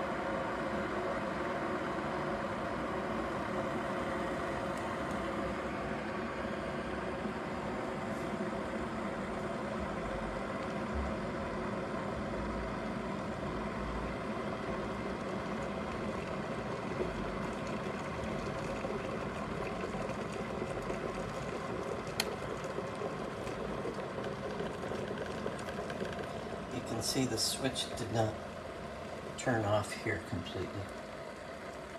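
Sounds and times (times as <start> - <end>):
electric kettle heating water: 0.0 - 31.9
kettle switch click: 22.2 - 22.4.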